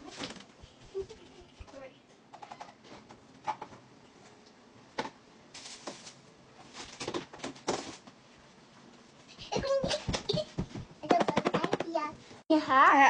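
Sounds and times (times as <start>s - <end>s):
rustling or splashing: 5.5s - 8.0s.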